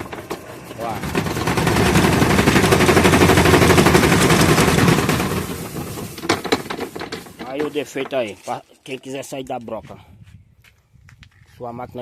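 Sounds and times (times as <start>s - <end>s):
washing machine spin rattling: 0.0s - 8.3s.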